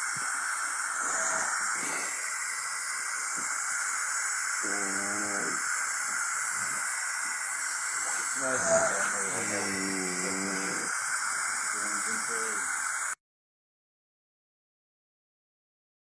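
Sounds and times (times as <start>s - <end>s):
steady hiss: 0.0s - 13.2s
voice-like hum: 1.0s - 2.2s, 4.6s - 5.7s, 8.0s - 11.0s.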